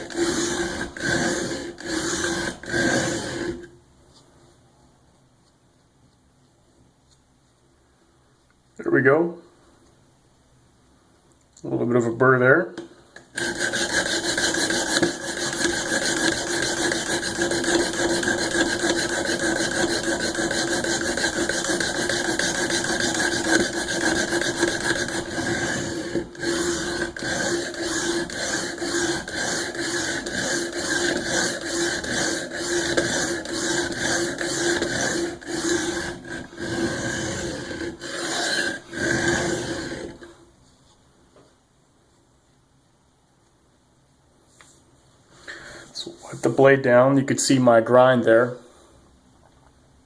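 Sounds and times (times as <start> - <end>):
knife grinding on sharpener: 0.0 - 3.7, 13.4 - 40.3.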